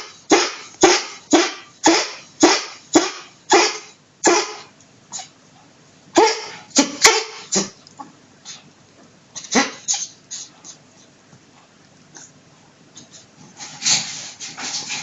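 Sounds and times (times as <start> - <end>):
dog coughing: 0.0 - 5.3, 6.1 - 7.8, 9.4 - 10.5.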